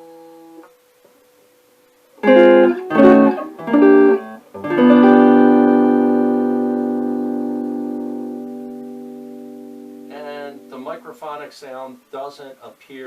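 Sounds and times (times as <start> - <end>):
electric guitar chords strummed: 2.2 - 10.9.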